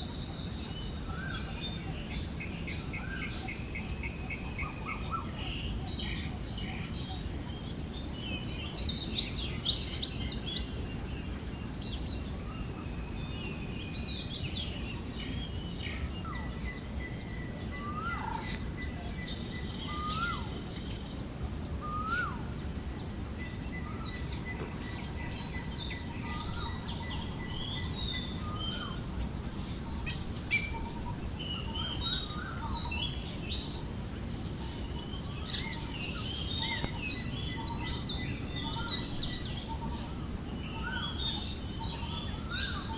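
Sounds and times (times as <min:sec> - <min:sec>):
low rumble of breeze: 0:00.0 - 0:42.9
small birds chirping: 0:21.7 - 0:42.9.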